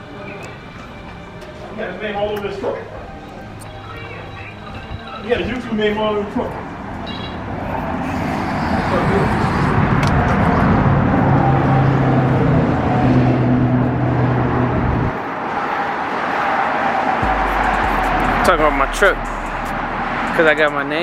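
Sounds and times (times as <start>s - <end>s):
road noise: 0.0s - 21.0s
vehicle engine running: 17.2s - 21.0s.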